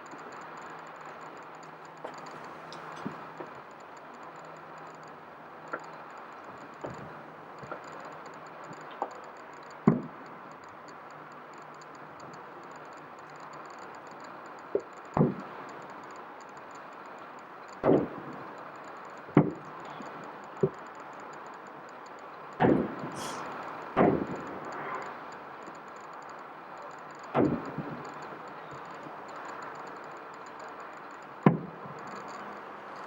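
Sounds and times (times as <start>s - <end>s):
steady background hiss: 0.0s - 33.0s
fireworks bursting: 17.8s - 18.5s, 22.6s - 25.2s, 27.3s - 29.7s, 31.4s - 33.0s.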